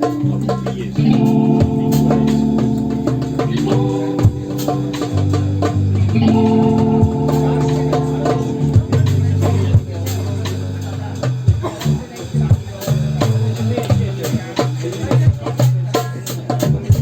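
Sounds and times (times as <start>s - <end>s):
organ-like keyboard chords: 0.0s - 14.4s
drum hits: 1.0s - 14.0s.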